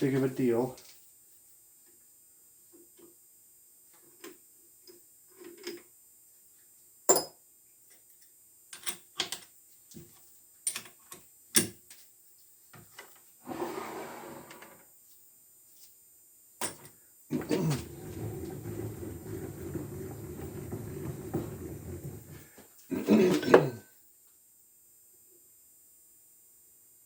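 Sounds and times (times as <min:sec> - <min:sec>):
rough scraping: 0:13.4 - 0:14.7, 0:17.3 - 0:22.6.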